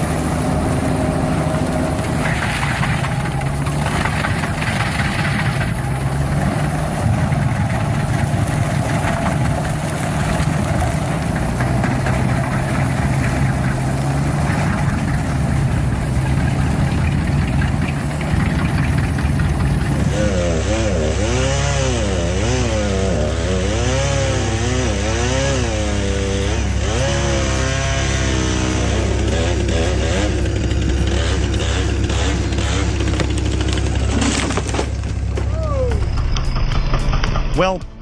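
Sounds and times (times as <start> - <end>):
heavy machine engine running: 0.0 - 38.0.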